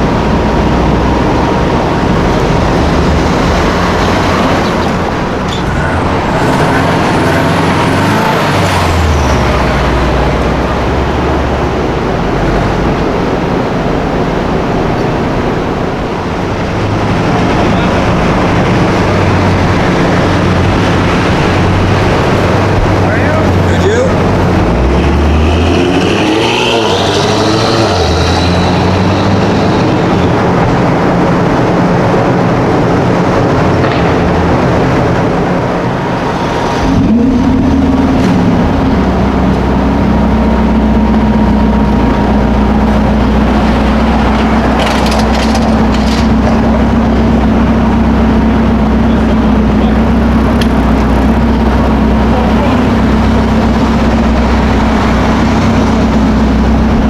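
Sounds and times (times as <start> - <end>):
car engine running: 0.0 - 57.0.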